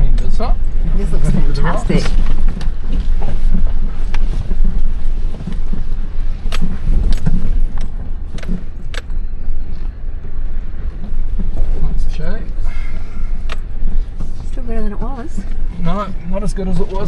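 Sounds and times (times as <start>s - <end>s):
sharp clinks and knocks: 0.0s - 9.9s, 13.2s - 14.4s.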